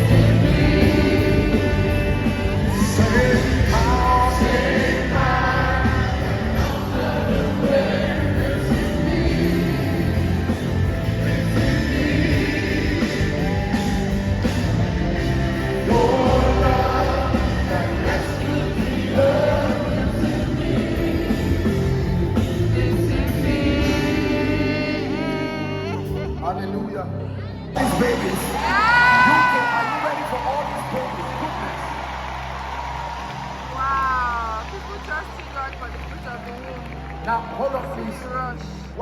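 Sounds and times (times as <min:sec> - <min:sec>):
drums: 0:00.0 - 0:26.3, 0:27.8 - 0:36.2
voices singing: 0:00.0 - 0:26.4
worship band playing: 0:00.0 - 0:27.2, 0:27.8 - 0:38.9.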